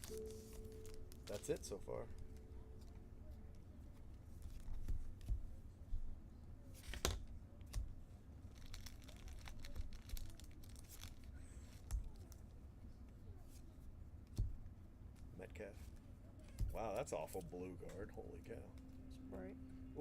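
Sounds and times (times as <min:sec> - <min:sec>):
cards clicking and rustling: 0:06.8 - 0:07.9
wrapper tearing and crinkling: 0:08.5 - 0:11.4.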